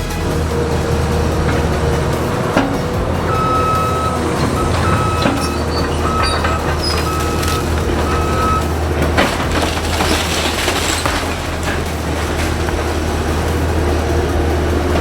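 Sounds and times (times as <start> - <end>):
diesel engine running: 0.0 - 15.0
backup alarm beeping: 3.2 - 8.8
knocks and cracks: 5.2 - 13.4.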